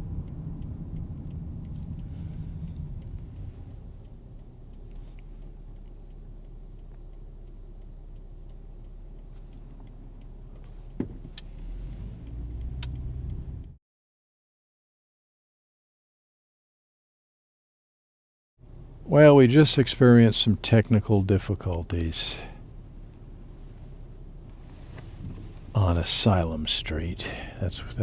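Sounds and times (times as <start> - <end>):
car engine and road rumble: 0.0 - 13.8, 18.6 - 28.0
sharp click: 12.7 - 13.1.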